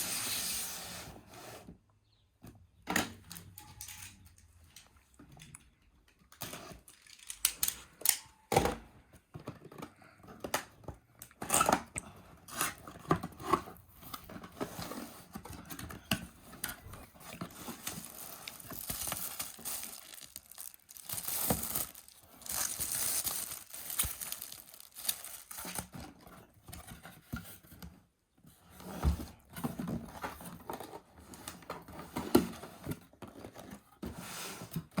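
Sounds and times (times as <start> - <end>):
clicks and knocks of contents: 2.9 - 28.0
wrapping tearing and crinkling: 17.4 - 26.0.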